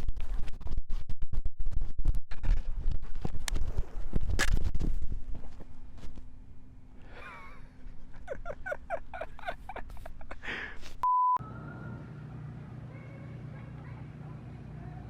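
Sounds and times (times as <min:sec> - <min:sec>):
steady low hum: 0:03.4 - 0:15.0
censor bleep: 0:11.0 - 0:11.5.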